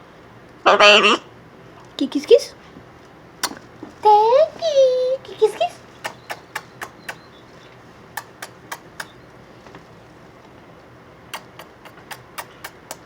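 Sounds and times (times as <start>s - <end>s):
kissing smacks: 3.4s - 3.7s, 6.0s - 7.2s, 8.1s - 9.2s, 11.3s - 13.0s.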